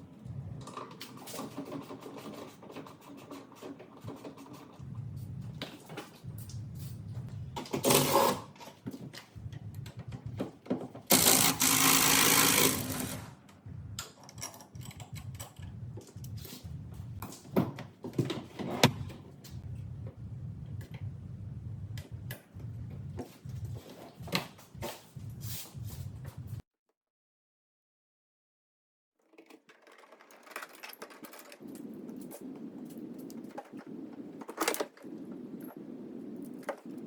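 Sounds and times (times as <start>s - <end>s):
power tool rattling: 11.1s - 13.4s.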